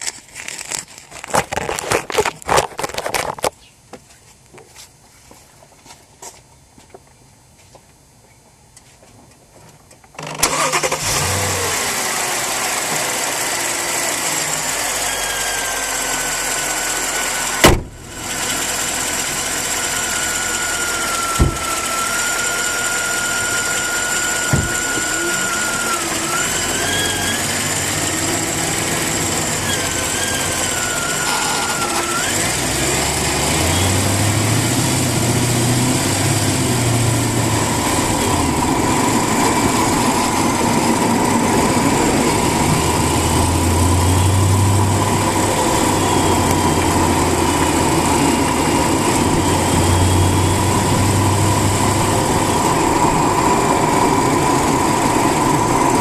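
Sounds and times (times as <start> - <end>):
car engine running: 10.4 - 56.0
high whine: 12.5 - 56.0.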